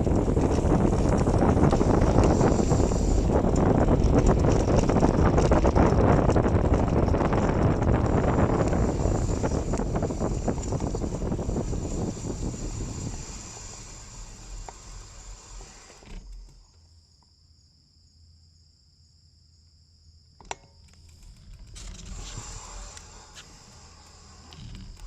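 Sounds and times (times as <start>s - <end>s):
wind and bicycle road noise: 0.0s - 16.8s, 20.4s - 25.0s
insects buzzing: 19.5s - 25.0s.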